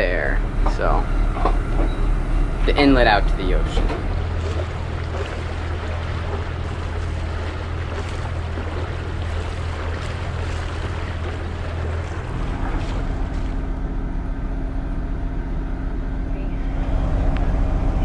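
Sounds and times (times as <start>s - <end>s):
boat engine humming: 0.0s - 18.0s
wind and water rushing: 1.6s - 14.3s.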